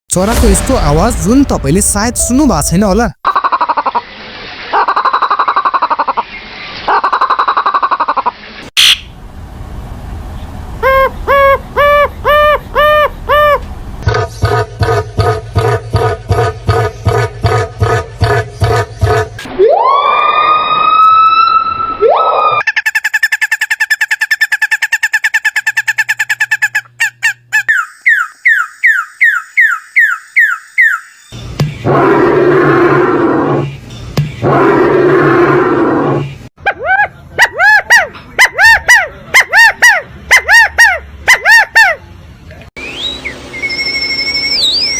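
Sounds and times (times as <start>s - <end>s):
clear pitched bird calls: 22.6s - 31.9s
bird falling chirps: 27.6s - 31.8s.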